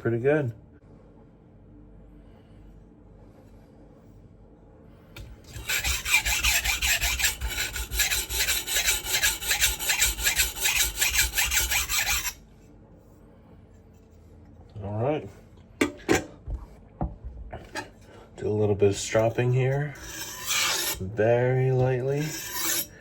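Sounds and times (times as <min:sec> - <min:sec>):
knife scraping on whetstone: 0:05.5 - 0:12.4, 0:19.0 - 0:21.0, 0:21.8 - 0:23.0.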